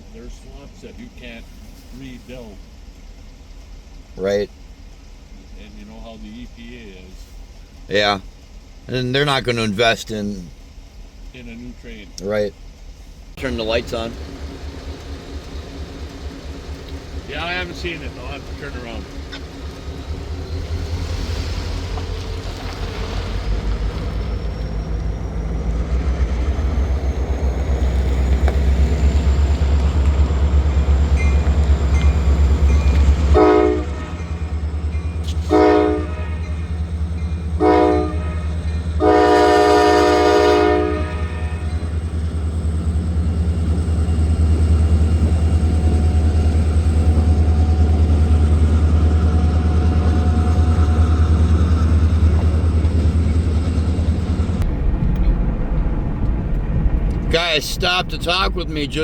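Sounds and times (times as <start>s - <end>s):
diesel locomotive engines rumbling: 0.0s - 59.0s
locomotive horn blasts: 32.7s - 42.0s.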